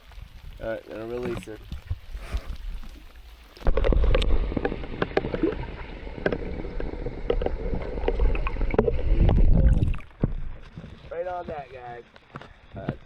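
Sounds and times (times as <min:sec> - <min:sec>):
water splashing against boat: 0:00.0 - 0:13.0
low microphone rumble: 0:03.7 - 0:10.7.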